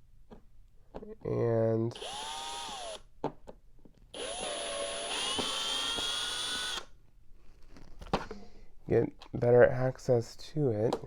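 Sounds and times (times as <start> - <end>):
electric drill whining: 2.0 - 3.0, 4.2 - 6.9.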